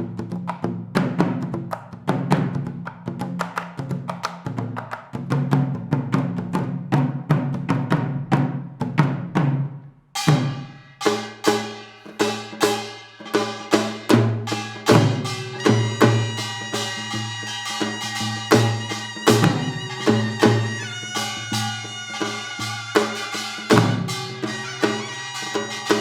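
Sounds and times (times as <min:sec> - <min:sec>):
drum strikes: 0:07.0 - 0:26.0.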